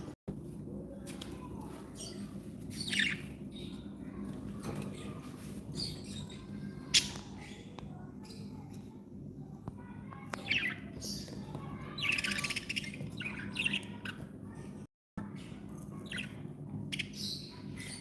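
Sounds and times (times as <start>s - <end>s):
low background hum: 0.0s - 18.0s
budgerigars chirping: 2.1s - 3.8s.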